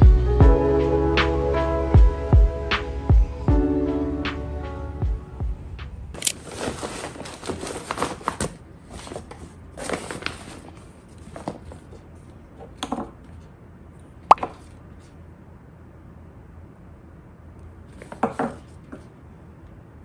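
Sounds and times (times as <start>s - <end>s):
rustling: 6.2s - 11.6s.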